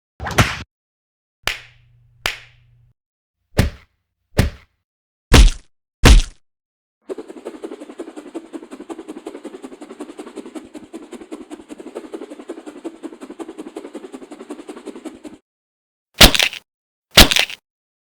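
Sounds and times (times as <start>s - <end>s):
rapid punch hits: 3.6s - 3.8s, 4.4s - 4.6s, 5.3s - 6.4s.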